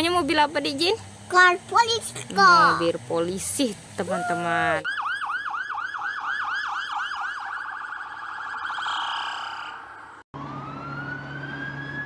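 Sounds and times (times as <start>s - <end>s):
police siren yelping: 4.0s - 12.0s.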